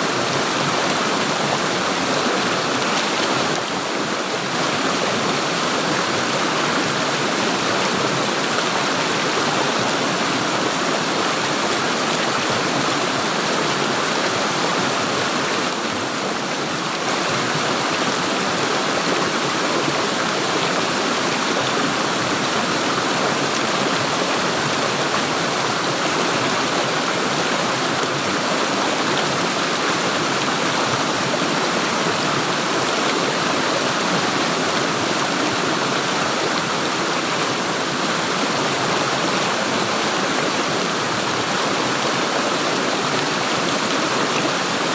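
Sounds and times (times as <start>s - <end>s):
stream water gurgling: 0.0s - 44.9s.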